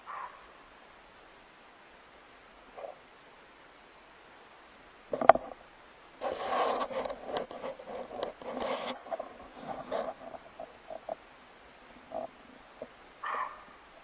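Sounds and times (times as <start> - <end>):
scraping and rustling: 5.1 - 5.6, 6.2 - 11.2, 12.0 - 12.9.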